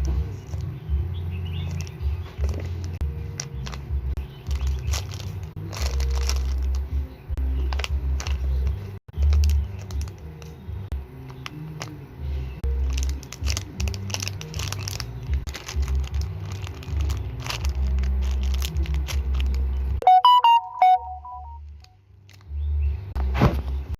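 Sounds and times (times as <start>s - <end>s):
small clicks and crinkles: 1.6s - 6.9s, 7.6s - 10.6s, 12.7s - 20.0s
electronic beeps: 20.0s - 21.6s.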